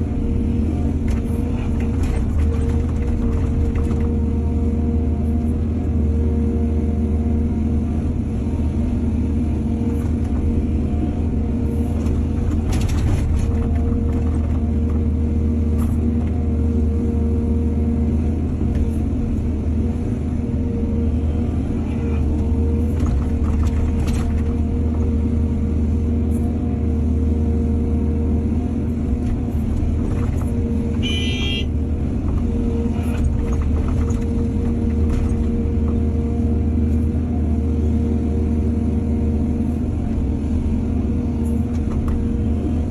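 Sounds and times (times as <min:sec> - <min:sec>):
excavator diesel engine running: 0:00.0 - 0:42.9.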